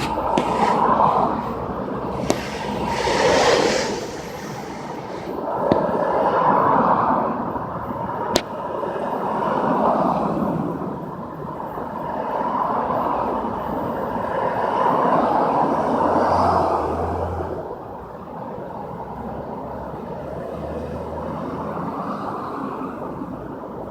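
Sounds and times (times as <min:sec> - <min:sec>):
vehicles passing: 0:00.0 - 0:18.0.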